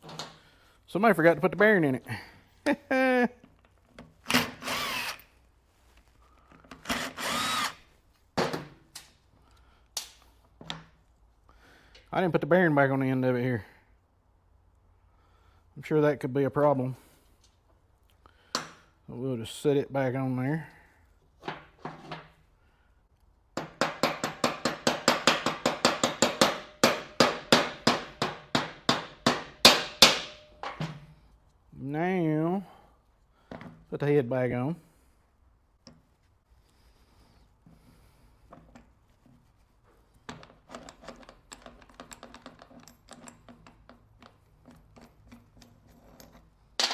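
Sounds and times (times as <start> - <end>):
clicks and knocks of parts handled: 0.0 - 0.5, 8.4 - 11.0, 39.9 - 46.9
electric drill whining: 4.3 - 5.3, 6.8 - 7.9.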